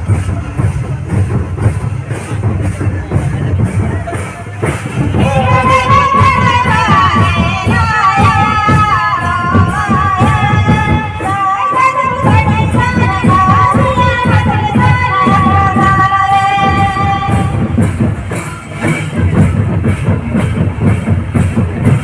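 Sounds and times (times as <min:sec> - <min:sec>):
song with sung melody and beat: 0:04.0 - 0:20.5.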